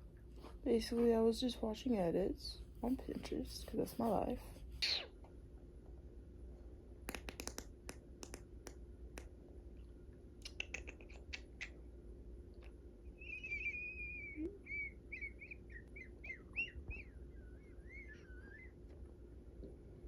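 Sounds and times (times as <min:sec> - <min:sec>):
dog whining: 0:13.2 - 0:18.8.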